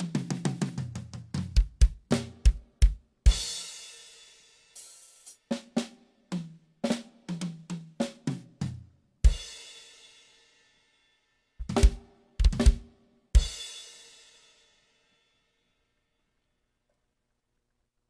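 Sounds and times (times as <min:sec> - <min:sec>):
bass drum: 0:00.5 - 0:03.5, 0:11.6 - 0:12.8
kick and snare accents: 0:11.6 - 0:12.8.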